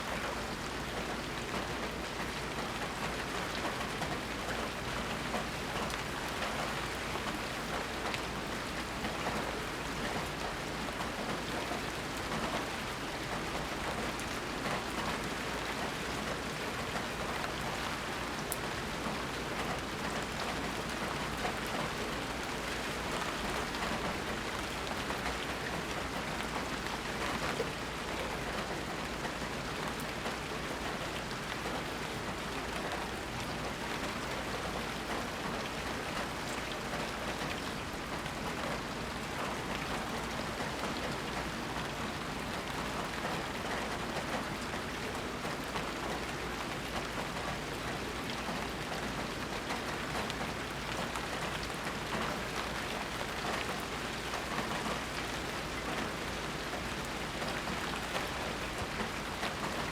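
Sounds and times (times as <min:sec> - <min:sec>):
steady rain patter: 0:00.0 - 0:59.9.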